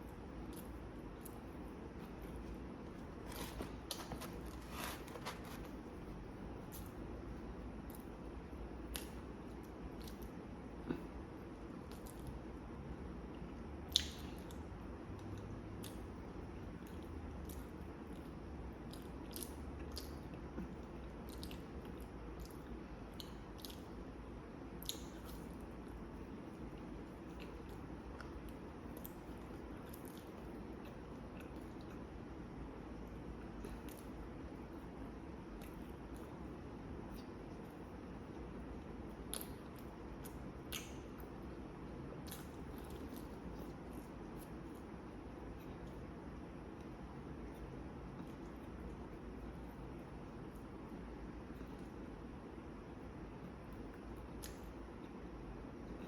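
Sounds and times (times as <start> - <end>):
low steady hum: 0.0 - 56.0
person chewing food: 0.4 - 5.9
wet mouth clicks and smacks: 13.9 - 14.5, 39.3 - 41.3, 54.4 - 54.7
chewing food: 16.8 - 23.9.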